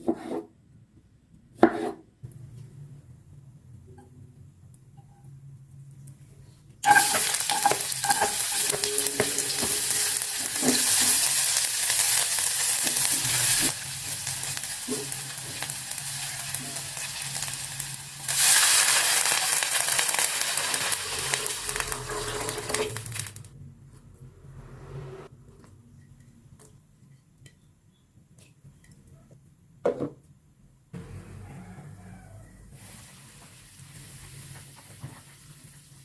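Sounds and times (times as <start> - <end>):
food sizzling in hot oil: 6.8 - 23.5.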